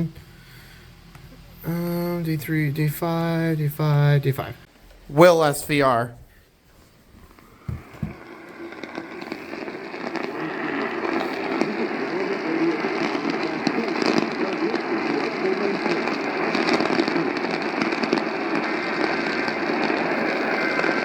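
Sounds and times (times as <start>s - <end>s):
radio static with crackles: 7.0s - 21.0s.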